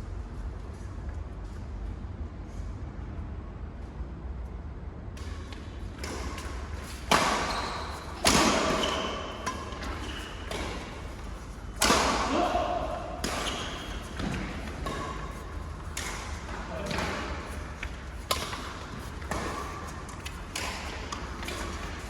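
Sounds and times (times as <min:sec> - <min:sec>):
echoing shuttlecock hits: 0:06.0 - 0:22.0.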